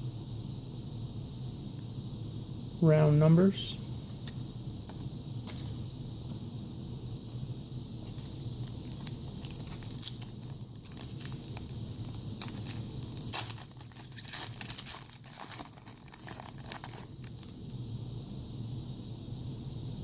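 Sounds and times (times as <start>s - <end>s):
card pack wrapper tearing and crinkling: 8.1s - 17.7s.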